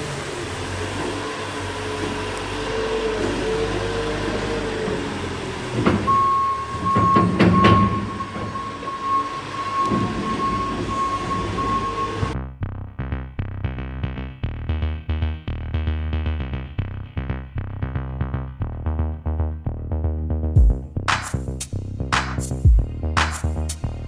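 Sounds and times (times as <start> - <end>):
tractor engine running: 0.0 - 12.4
metal clanks: 4.9 - 12.4
music: 12.3 - 24.0.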